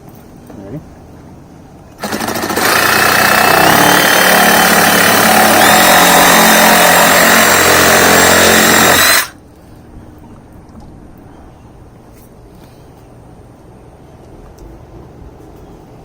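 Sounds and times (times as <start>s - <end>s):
power saw cutting pipe: 2.0s - 9.4s.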